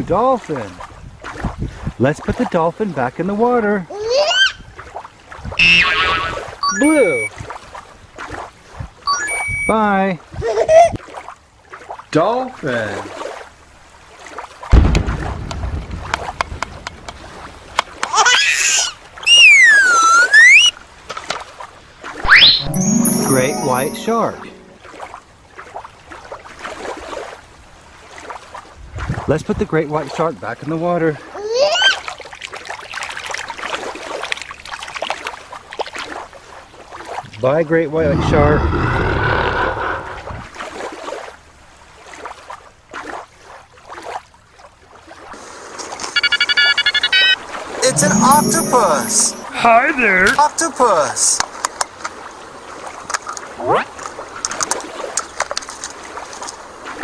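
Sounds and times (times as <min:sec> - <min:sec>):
water sloshing and splashing: 0:00.0 - 0:02.4, 0:04.7 - 0:05.6, 0:06.3 - 0:19.3, 0:20.8 - 0:22.4, 0:24.7 - 0:29.3, 0:31.2 - 0:37.4, 0:40.3 - 0:46.1, 0:51.4 - 0:57.0
loud pitch-bending whistle: 0:05.6 - 0:07.3, 0:09.1 - 0:09.7, 0:19.3 - 0:20.7, 0:22.3 - 0:23.6.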